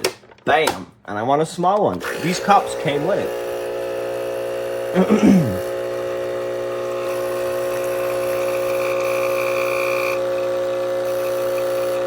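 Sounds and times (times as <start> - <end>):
espresso machine pump humming: 2.0 - 12.0.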